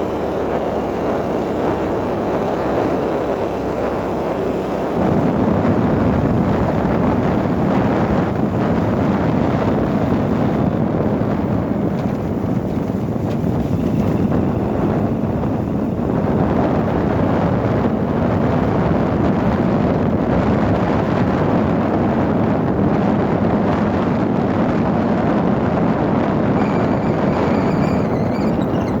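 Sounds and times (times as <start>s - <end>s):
vehicle low rumble: 0.0s - 29.0s
wind buffeting microphone: 0.0s - 29.0s.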